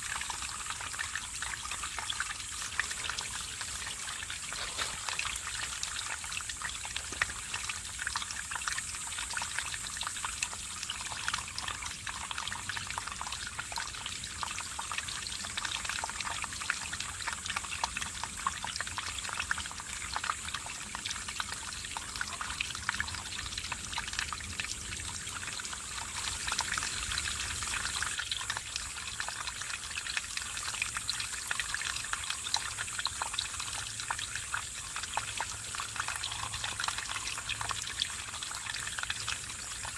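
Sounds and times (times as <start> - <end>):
stream splashing over rocks: 0.0 - 12.4.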